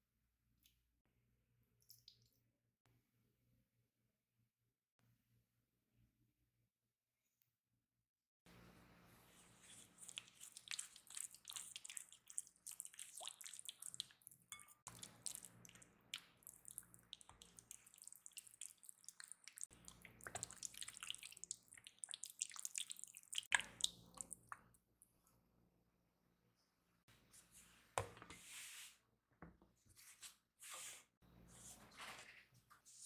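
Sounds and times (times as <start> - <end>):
wet food squishing and crackling: 9.4 - 24.7.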